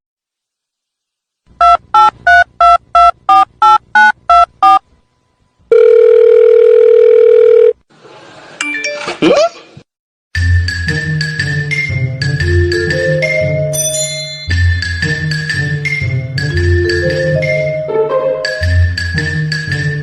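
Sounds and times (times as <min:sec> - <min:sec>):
steady phone tone: 0:05.7 - 0:07.8.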